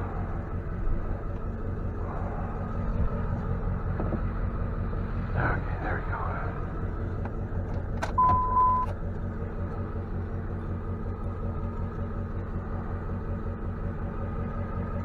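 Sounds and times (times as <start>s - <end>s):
truck engine idling: 0.0s - 15.0s
short electronic beep: 8.2s - 8.9s.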